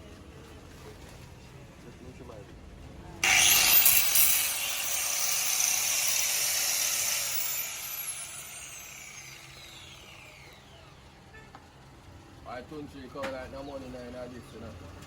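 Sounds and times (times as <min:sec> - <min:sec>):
power tool whine spinning down: 0:03.2 - 0:11.2.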